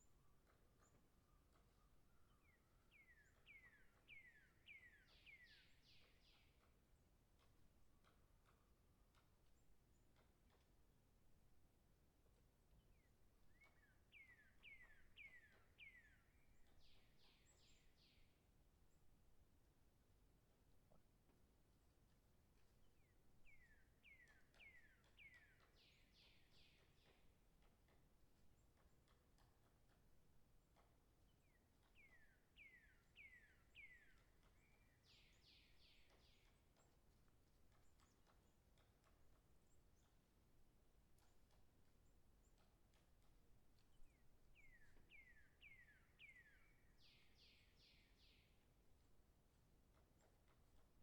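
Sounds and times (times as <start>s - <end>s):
distant woodpecker tapping: 0.0s - 51.0s
distant whistled bird calls: 0.1s - 6.6s, 12.9s - 18.3s, 23.0s - 27.2s, 31.4s - 36.8s, 43.9s - 48.6s.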